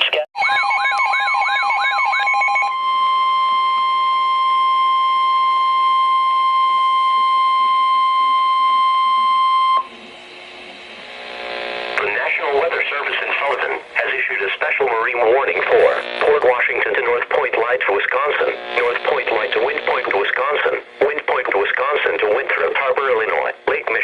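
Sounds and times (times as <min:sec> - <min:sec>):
steady warning alarm tone: 0:00.4 - 0:10.8.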